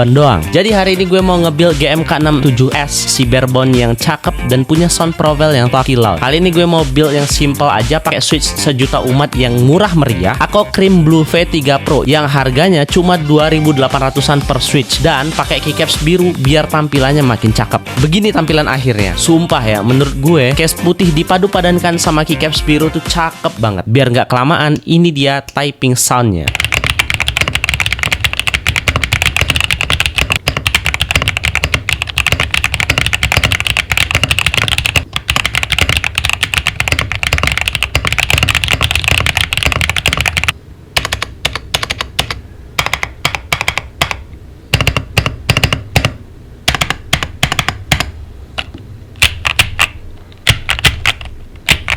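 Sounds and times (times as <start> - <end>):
mechanical keyboard typing: 26.4 - 51.9.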